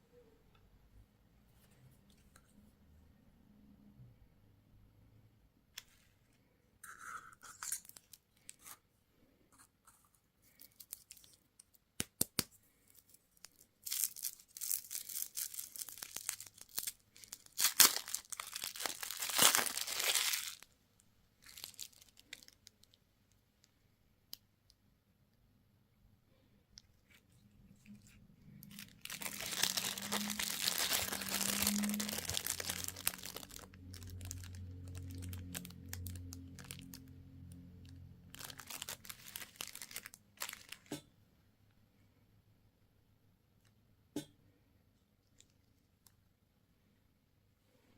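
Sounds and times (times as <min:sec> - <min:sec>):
candy wrappers crinkling: 0:06.8 - 0:08.8, 0:09.8 - 0:20.7, 0:21.4 - 0:23.4, 0:26.9 - 0:40.9.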